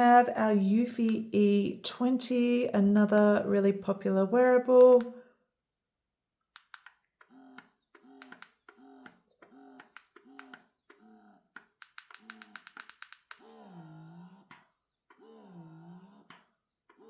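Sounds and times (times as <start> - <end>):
breast pump motor whirring: 7.2 - 11.1
pump clicks: 7.6 - 10.6.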